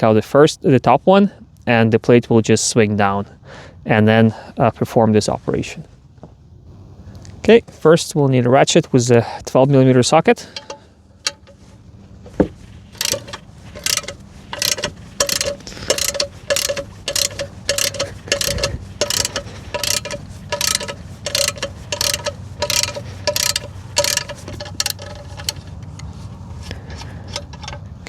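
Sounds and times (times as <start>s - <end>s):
ratchet wrench clicking: 10.5s - 11.7s, 12.9s - 27.8s.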